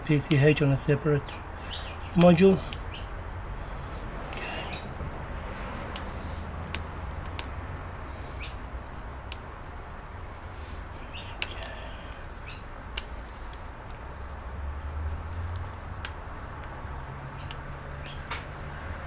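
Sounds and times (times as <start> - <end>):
bird chirps: 1.3 - 3.2, 4.4 - 5.0, 8.3 - 8.6, 11.0 - 11.8, 12.4 - 12.7, 17.4 - 18.3.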